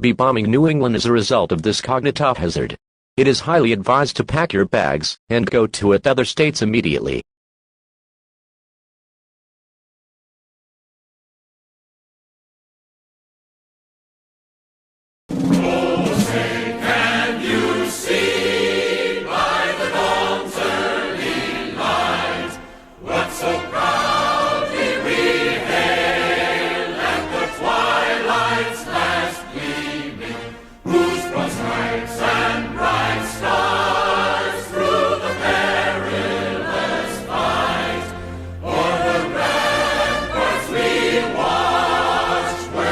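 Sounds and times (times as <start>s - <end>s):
choir singing sustained chords: 15.3s - 42.9s.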